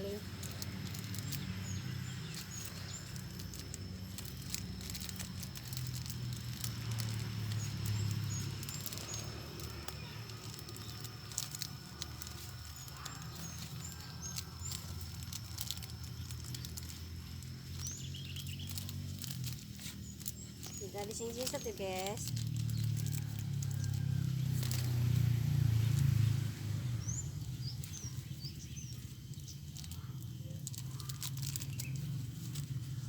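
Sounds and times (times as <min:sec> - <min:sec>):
low steady rumble: 0:00.0 - 0:33.0
plastic bag crinkling: 0:00.0 - 0:33.0.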